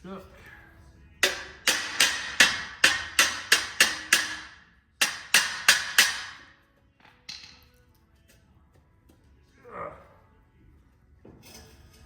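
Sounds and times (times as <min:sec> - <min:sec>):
hammer striking metal wheel: 0:01.2 - 0:06.5.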